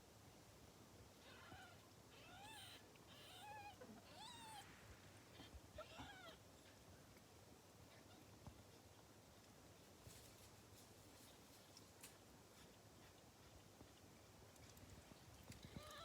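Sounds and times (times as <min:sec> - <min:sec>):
kittens mewing: 0:01.2 - 0:04.7, 0:05.3 - 0:06.8.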